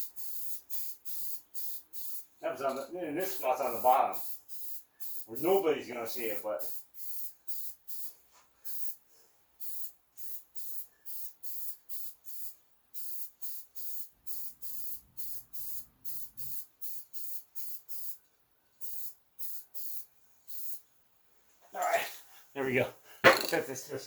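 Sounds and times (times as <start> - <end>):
spray can hissing bursts: 0.0 - 9.0, 9.6 - 18.2, 18.8 - 20.8.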